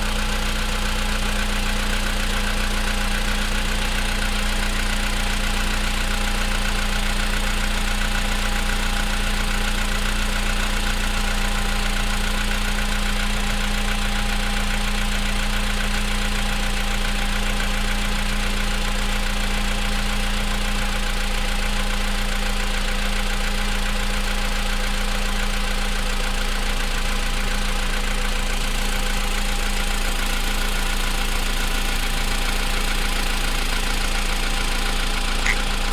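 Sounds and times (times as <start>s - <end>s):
car engine idling: 0.0s - 35.9s
engine knocking: 0.0s - 35.9s.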